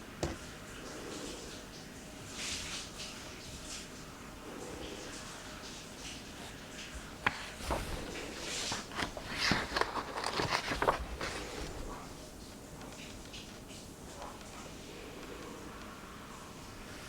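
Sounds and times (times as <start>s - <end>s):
paper page rustling: 6.4s - 14.5s.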